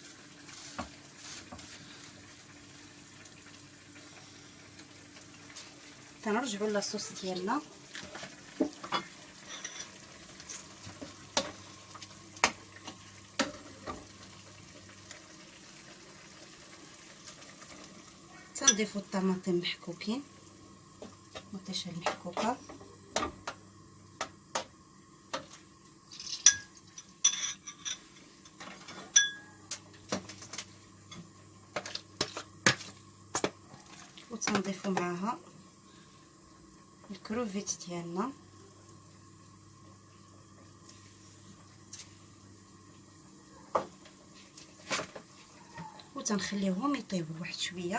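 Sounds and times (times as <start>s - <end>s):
sauce sizzling in a pan: 0.0s - 27.2s
utensils clinking against pots: 8.8s - 10.6s, 18.6s - 19.0s, 26.1s - 29.8s.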